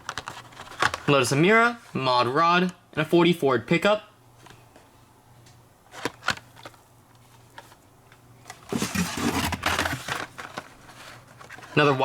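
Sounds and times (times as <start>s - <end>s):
blister packaging rustling: 0.0s - 1.2s, 5.8s - 12.0s.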